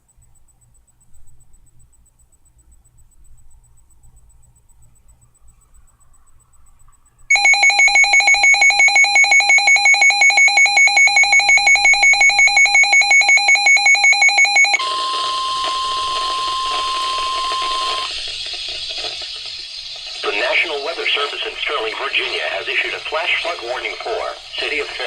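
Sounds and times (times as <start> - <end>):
steady warning alarm tone: 0.0 - 18.8, 20.2 - 25.0
rapidly pulsing electronic signal: 0.0 - 25.0
radio hiss: 14.8 - 25.0.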